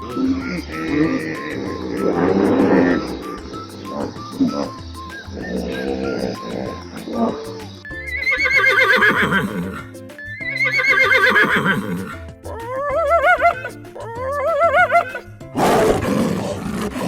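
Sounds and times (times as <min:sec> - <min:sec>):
background music: 0:00.0 - 0:17.0
horse whinnying: 0:07.3 - 0:17.0.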